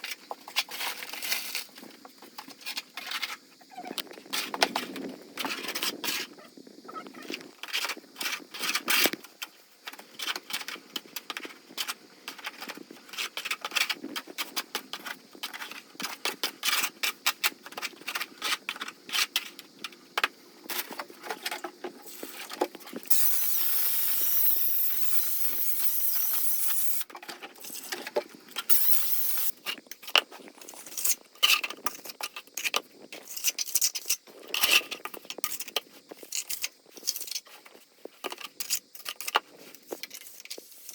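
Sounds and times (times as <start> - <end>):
steady hiss: 22.0 - 27.8, 28.6 - 29.7
hard objects clinking and scraping: 22.1 - 29.5.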